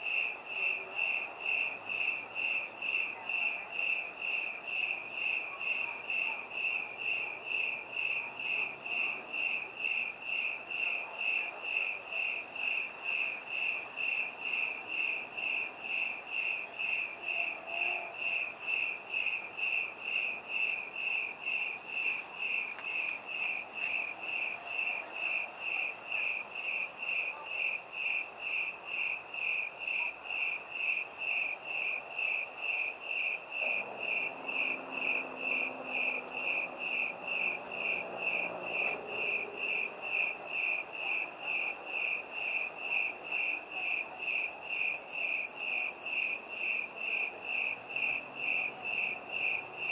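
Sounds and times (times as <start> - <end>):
cricket chirping: 0.0 - 49.9
faint low city hum: 16.9 - 27.6.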